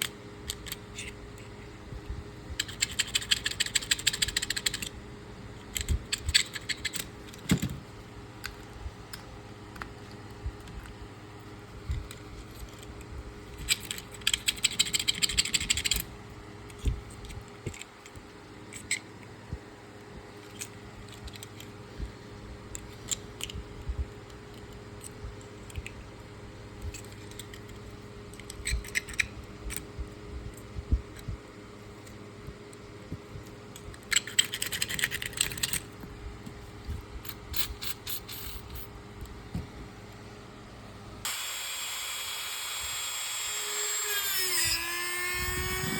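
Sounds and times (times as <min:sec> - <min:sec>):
pocket knife clicks and rattles: 0:02.6 - 0:04.9, 0:13.6 - 0:16.1, 0:33.8 - 0:35.9.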